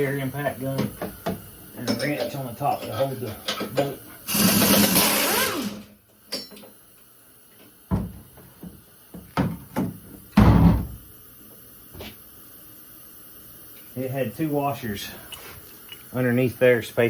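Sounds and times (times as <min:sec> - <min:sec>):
air impact gun: 0:04.3 - 0:05.9.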